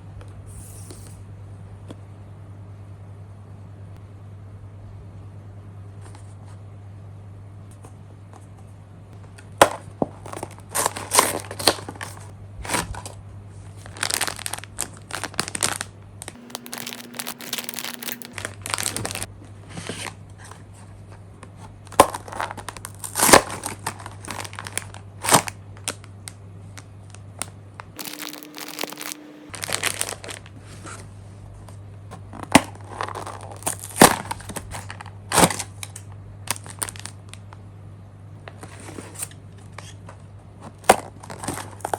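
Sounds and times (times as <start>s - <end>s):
low electrical hum: 0.0s - 41.9s
packaging crinkling and rustling: 9.6s - 20.6s, 21.4s - 26.1s, 26.8s - 31.1s, 32.1s - 37.6s, 40.6s - 41.9s.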